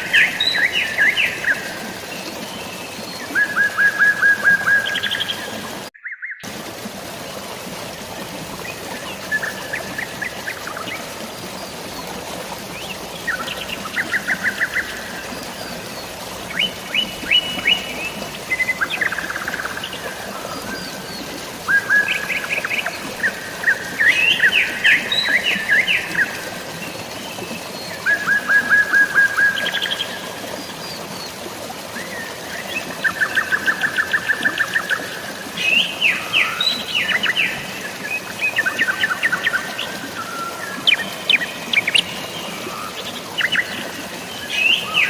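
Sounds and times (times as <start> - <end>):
flowing water: 0.0 - 45.0
rain falling: 6.5 - 27.1.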